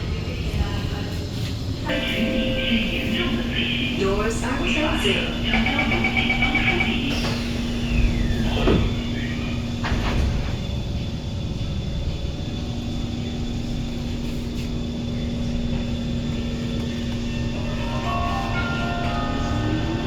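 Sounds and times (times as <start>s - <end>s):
train low rumble and motor tone: 0.0s - 20.0s
train clunk: 1.9s - 11.0s.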